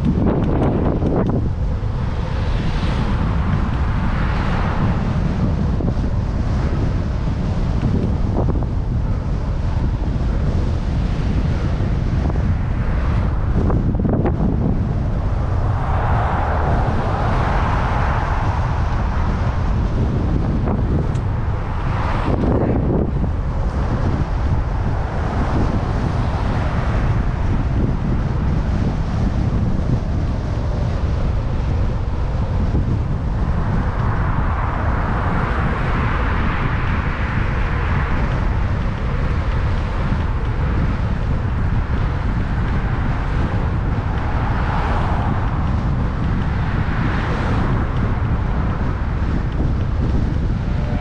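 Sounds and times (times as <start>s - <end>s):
wind buffeting microphone: 0.0s - 51.0s
motor traffic passing: 13.2s - 51.0s.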